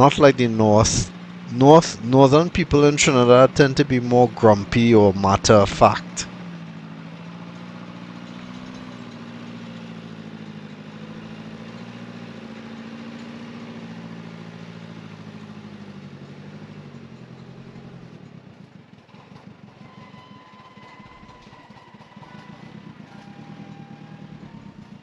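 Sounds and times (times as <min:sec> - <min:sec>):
heavy machine engine running: 0:00.0 - 0:25.0.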